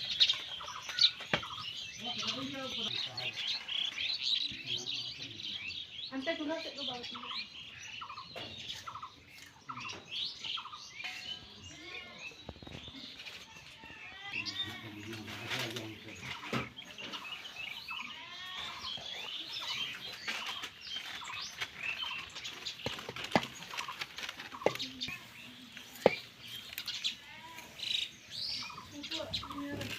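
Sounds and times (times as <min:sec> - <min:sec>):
birds chirping: 0:00.0 - 0:29.9
taps and rustles: 0:20.1 - 0:27.0.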